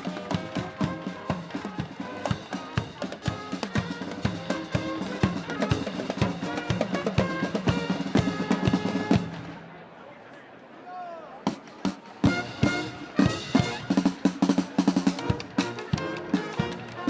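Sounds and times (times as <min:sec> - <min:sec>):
marching band playing: 0:00.0 - 0:09.8, 0:11.5 - 0:17.0.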